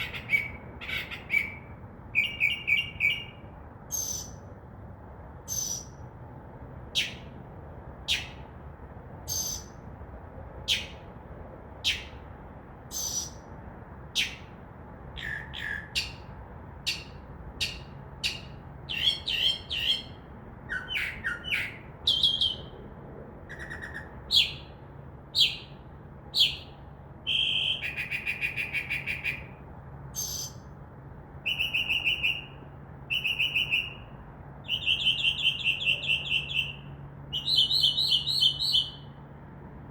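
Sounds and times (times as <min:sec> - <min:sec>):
mockingbird singing: 0:00.0 - 0:04.4, 0:05.5 - 0:06.0, 0:12.9 - 0:13.4, 0:15.2 - 0:16.3, 0:16.9 - 0:22.7, 0:26.4 - 0:29.5, 0:30.2 - 0:30.7, 0:31.4 - 0:39.1.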